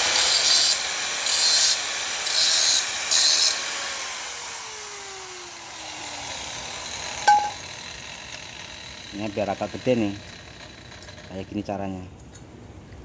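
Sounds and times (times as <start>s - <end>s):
power tool grinding sheet metal: 0.0s - 11.2s
power tool whine winding down: 3.9s - 11.2s.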